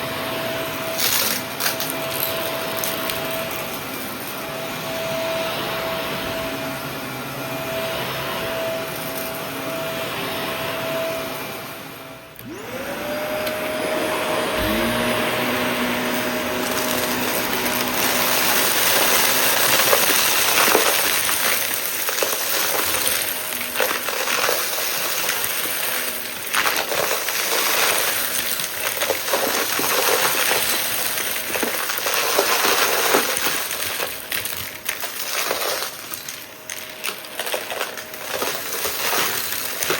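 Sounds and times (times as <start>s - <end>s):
vacuum cleaner motor: 0.0s - 39.9s
debris crackling in vacuum: 14.5s - 39.9s.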